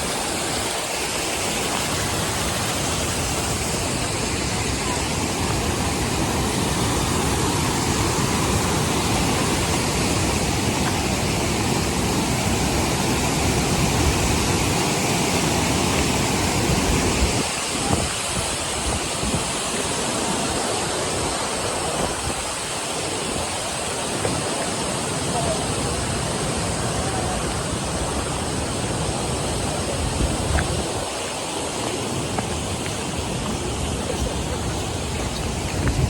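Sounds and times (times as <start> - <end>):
rushing wind: 0.0 - 36.0
wind buffeting microphone: 15.8 - 23.5, 25.4 - 36.0.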